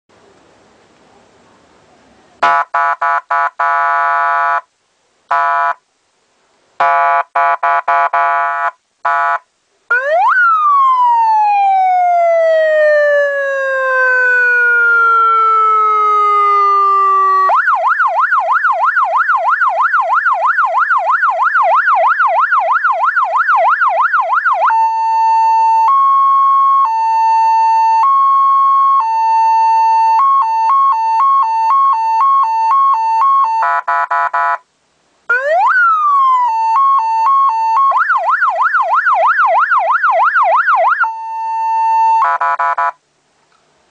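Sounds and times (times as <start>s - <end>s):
buzzy horn blasts: 2.4s - 4.6s, 5.3s - 5.8s, 6.8s - 9.5s, 33.6s - 34.6s
electronic siren wail and yelp: 6.8s - 34.6s, 35.3s - 43.0s.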